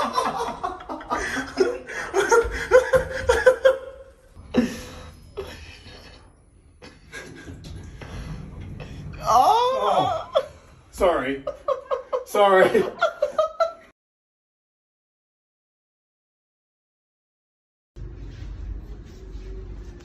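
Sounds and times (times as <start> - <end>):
people laughing: 0.0 - 7.9, 9.8 - 13.9.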